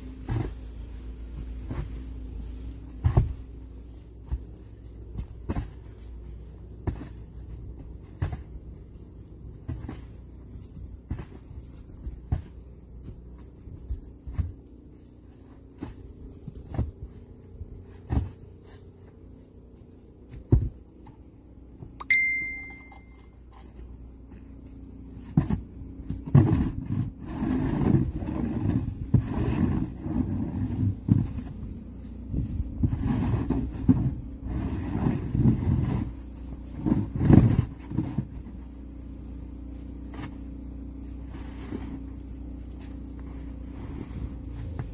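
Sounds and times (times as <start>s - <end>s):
ringing metallic clink: 22.0s - 23.2s
shovel scraping through snow: 26.3s - 31.2s, 32.8s - 38.2s.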